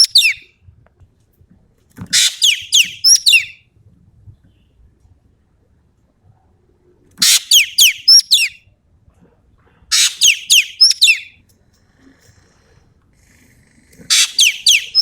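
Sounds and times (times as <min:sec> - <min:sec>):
bird singing rasping and whistles: 0:00.0 - 0:00.5, 0:02.2 - 0:03.6, 0:07.2 - 0:08.6, 0:09.9 - 0:11.4, 0:14.1 - 0:15.0.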